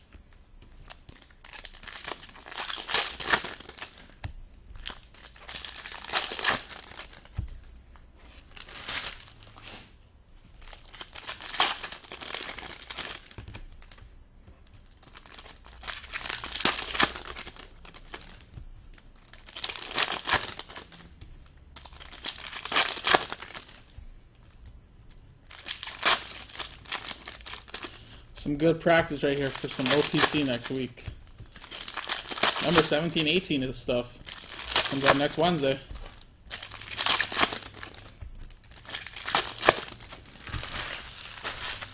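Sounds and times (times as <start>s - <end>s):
foil wrappers tearing and crinkling: 0.9s - 4.2s, 4.8s - 7.3s, 10.6s - 14.0s, 14.9s - 18.5s, 19.2s - 21.0s, 21.8s - 24.0s, 25.4s - 28.2s, 29.0s - 41.9s.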